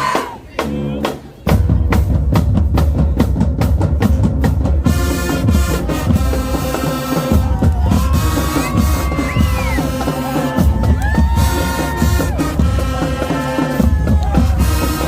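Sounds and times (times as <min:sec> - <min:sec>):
drums pounding a beat: 0:00.0 - 0:15.0
wind and brass instruments: 0:00.0 - 0:15.0.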